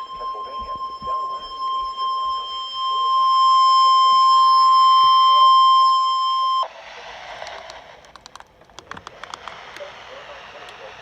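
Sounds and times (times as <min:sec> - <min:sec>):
loud steady alarm tone: 0:00.0 - 0:06.8
radio hiss: 0:06.4 - 0:08.1, 0:09.0 - 0:11.0
static crackles: 0:07.3 - 0:11.0.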